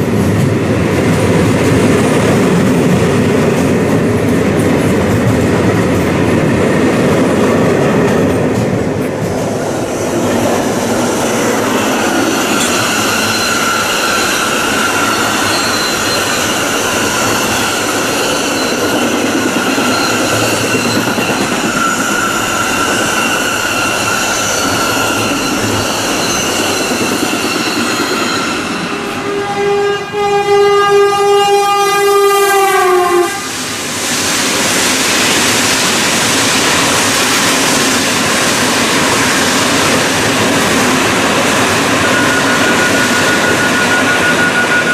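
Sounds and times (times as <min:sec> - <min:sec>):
freight train rumbling over rails: 0:00.0 - 0:44.9
train horn long note: 0:29.1 - 0:33.6.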